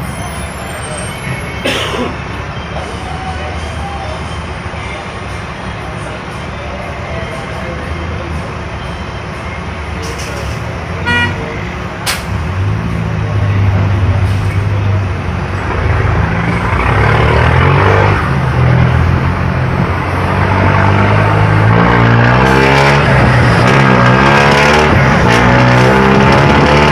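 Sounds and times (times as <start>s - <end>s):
bus engine running: 0.0s - 26.9s
sharp click: 12.0s - 12.4s.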